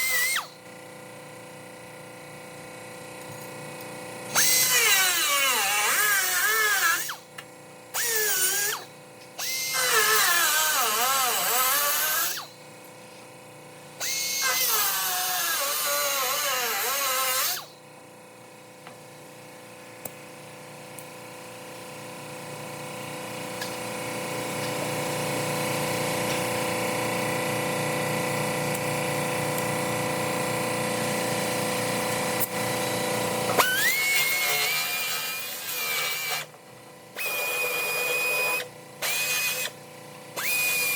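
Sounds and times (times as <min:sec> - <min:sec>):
steady machine hum: 0:00.0 - 0:40.9
cut-off tool cutting steel: 0:04.3 - 0:07.2, 0:08.0 - 0:12.6, 0:14.0 - 0:17.8, 0:33.5 - 0:36.5, 0:37.2 - 0:39.8, 0:40.4 - 0:40.9.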